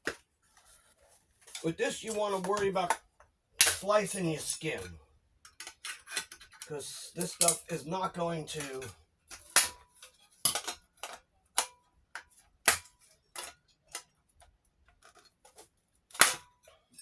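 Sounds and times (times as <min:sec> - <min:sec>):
sheet metal snapping: 0:03.6 - 0:04.9, 0:07.2 - 0:07.7.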